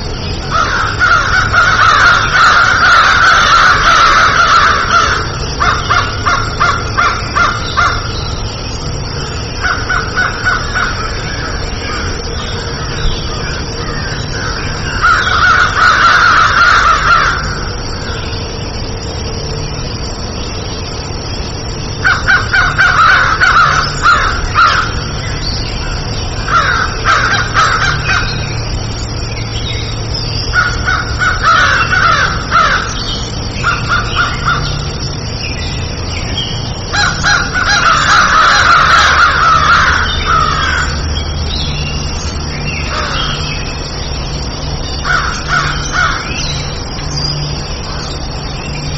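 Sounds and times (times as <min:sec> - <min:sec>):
steady low hum: 0:00.0 - 0:48.9
crows cawing: 0:00.4 - 0:18.2, 0:21.9 - 0:29.0, 0:30.1 - 0:35.2, 0:36.6 - 0:41.4, 0:42.7 - 0:43.7, 0:44.9 - 0:46.9.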